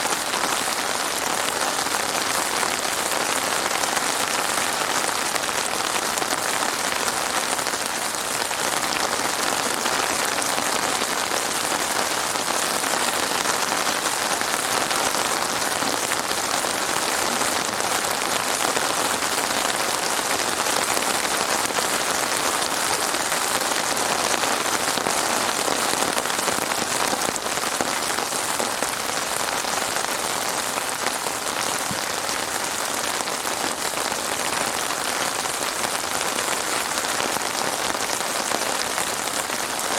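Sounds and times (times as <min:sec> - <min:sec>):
heavy rain falling: 0:00.0 - 0:39.9.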